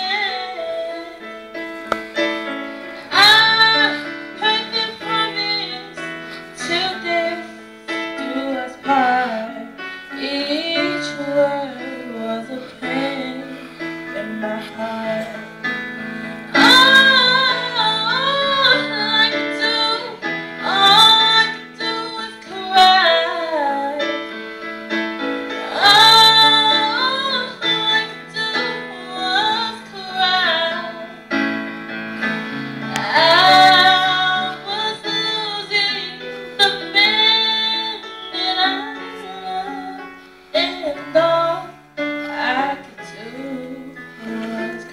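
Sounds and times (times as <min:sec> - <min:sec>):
piano accompaniment: 0:00.0 - 0:44.9.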